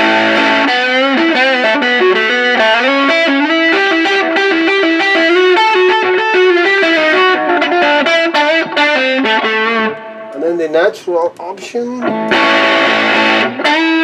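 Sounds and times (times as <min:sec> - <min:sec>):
distorted electric guitar lead: 0:00.0 - 0:14.0.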